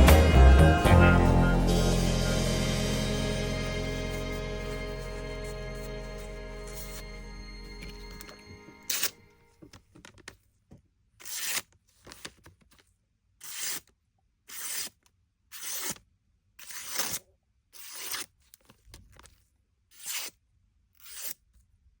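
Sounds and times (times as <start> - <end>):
pocket knife blade rasping: 21.0 - 21.4.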